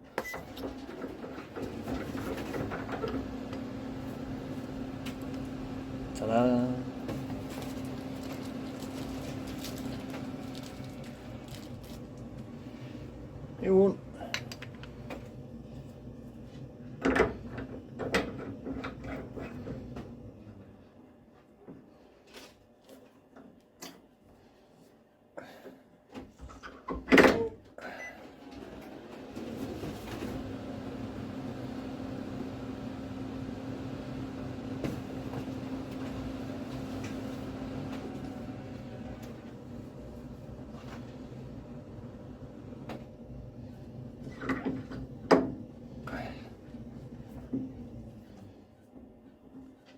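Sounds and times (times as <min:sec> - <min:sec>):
machine humming: 0:01.6 - 0:14.4.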